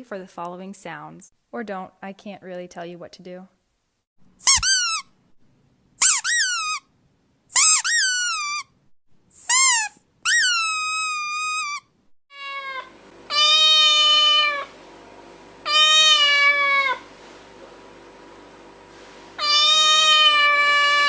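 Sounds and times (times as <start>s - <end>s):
cat meowing: 12.3s - 14.7s, 15.7s - 17.0s, 19.4s - 21.0s.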